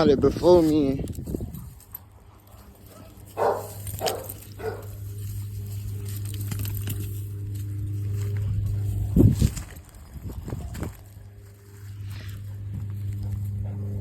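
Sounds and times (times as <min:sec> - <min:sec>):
low steady hum: 0:00.0 - 0:14.0
dog barking: 0:02.9 - 0:05.0.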